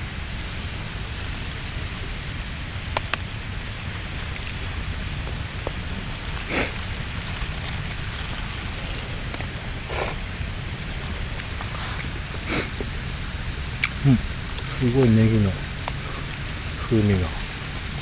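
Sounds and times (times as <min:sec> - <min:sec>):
person slurping food: 0:06.4 - 0:07.1, 0:08.2 - 0:18.0.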